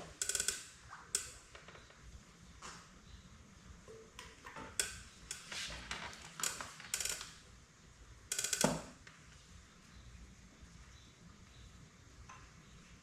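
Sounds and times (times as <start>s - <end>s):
rapid ratchet clicks: 0.0s - 1.4s, 8.3s - 8.9s.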